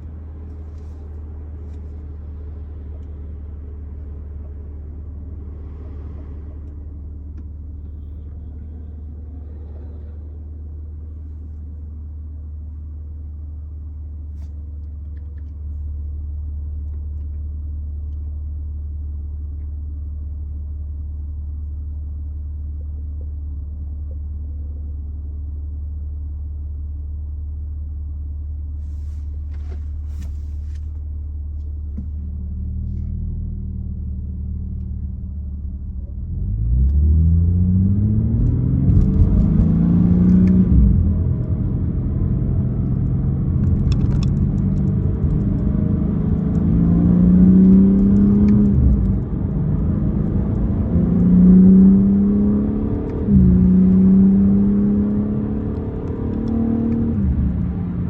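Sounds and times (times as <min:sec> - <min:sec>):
car engine accelerating: 0:00.0 - 0:12.1, 0:28.8 - 0:58.0.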